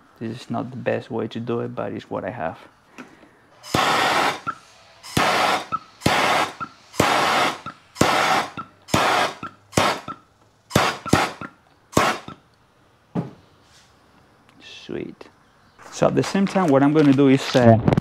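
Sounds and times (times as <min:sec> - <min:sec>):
gas torch hissing: 0:03.5 - 0:12.4.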